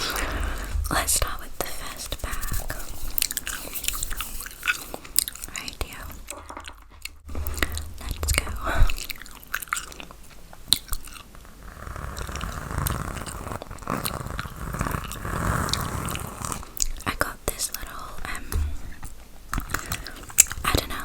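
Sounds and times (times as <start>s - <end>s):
gum chewing clicks and smacks: 8.9s - 11.4s.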